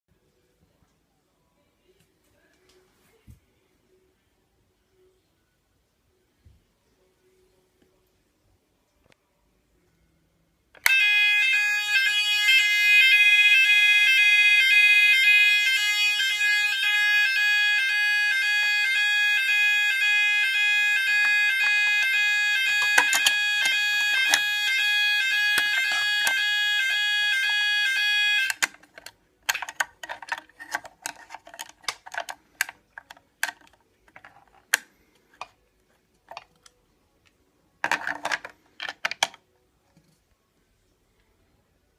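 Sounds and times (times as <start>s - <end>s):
shrill pulsing fire alarm: 10.8s - 28.7s.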